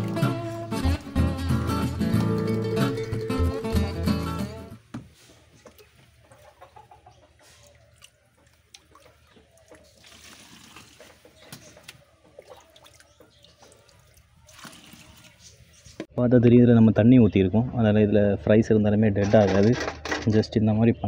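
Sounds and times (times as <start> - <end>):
water splashing and dripping: 0.0 - 1.2, 7.5 - 15.8
faint clucking: 5.6 - 8.6.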